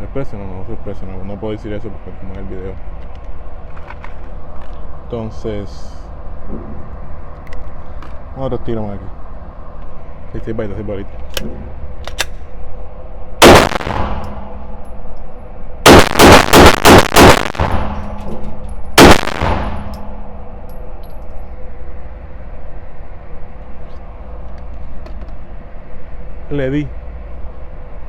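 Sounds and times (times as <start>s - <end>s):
pistol shots with echo: 13.4s - 14.6s, 15.9s - 18.2s, 19.0s - 20.3s.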